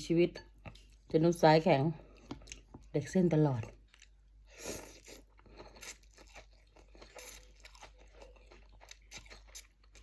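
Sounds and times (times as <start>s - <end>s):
person chewing: 0.5s - 1.1s, 2.0s - 2.9s, 3.6s - 10.0s.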